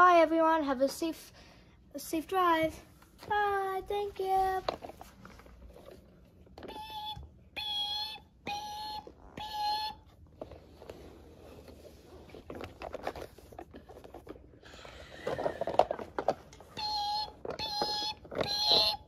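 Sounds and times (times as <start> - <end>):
toys clicking and rustling: 4.2 - 7.3, 8.5 - 19.0.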